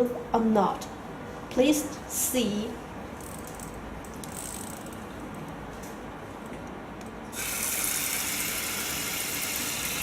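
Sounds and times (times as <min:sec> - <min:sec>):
shower spraying water: 0:07.4 - 0:10.0.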